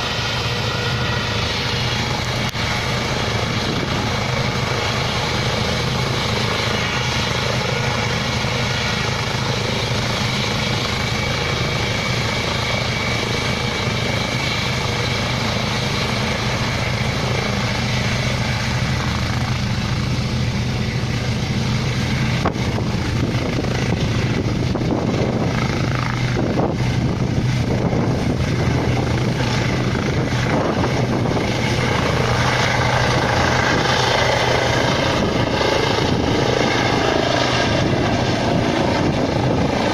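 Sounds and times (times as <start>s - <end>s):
helicopter engine whine: 0.0s - 39.9s
helicopter rotor thrum: 0.0s - 39.9s.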